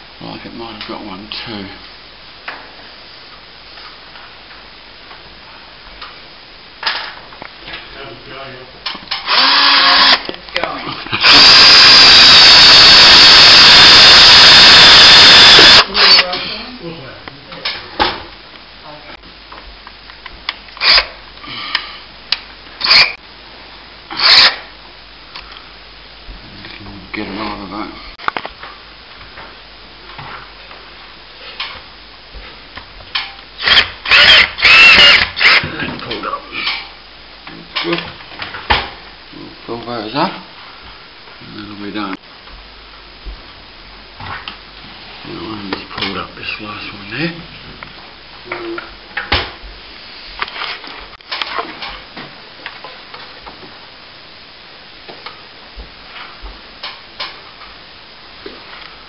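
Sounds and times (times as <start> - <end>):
screw gun driving screw: 9.2 - 10.2, 11.2 - 16.3, 20.8 - 21.1, 22.8 - 23.2, 24.2 - 24.6, 33.6 - 35.6
screw squealing scrape: 33.7 - 35.6.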